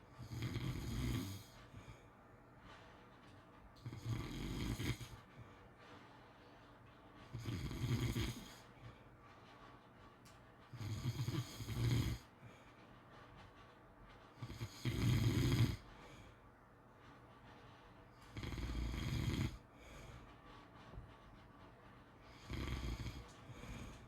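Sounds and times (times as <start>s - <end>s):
dog breathing quietly: 0.0s - 24.0s
dog snoring: 0.2s - 2.0s, 3.8s - 5.3s, 7.3s - 8.9s, 10.7s - 12.3s, 14.4s - 16.3s, 18.2s - 20.1s, 22.3s - 24.0s.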